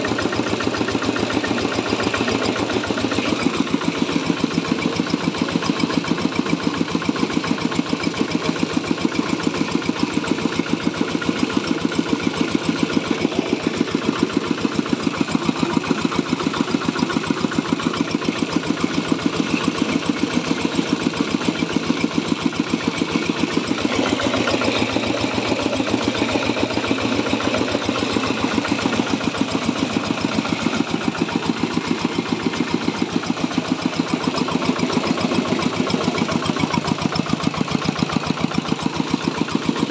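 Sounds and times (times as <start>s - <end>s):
diesel engine running mill: 18.1s - 39.9s.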